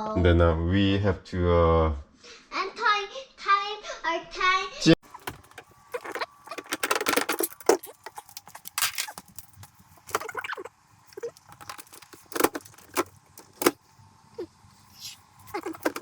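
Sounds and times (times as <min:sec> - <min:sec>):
plastic refrigerator parts rattling: 0:05.0 - 0:13.8, 0:15.0 - 0:16.0.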